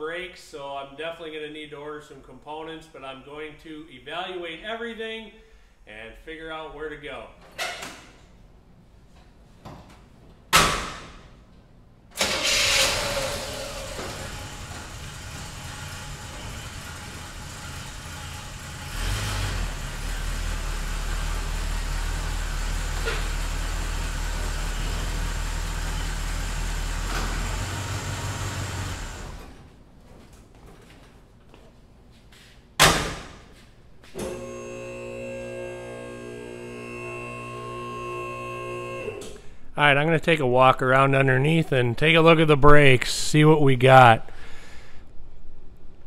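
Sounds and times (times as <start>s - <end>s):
pickup truck engine running: 13.2s - 29.4s.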